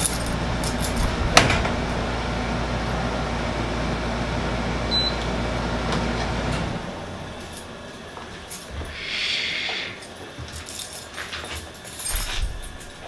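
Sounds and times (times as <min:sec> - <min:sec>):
low mechanical rumble: 0:00.0 - 0:09.5.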